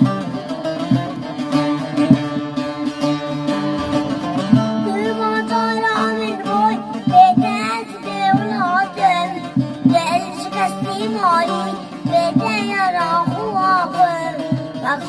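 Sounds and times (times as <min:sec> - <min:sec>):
plucked string instrument: 0:00.0 - 0:15.0.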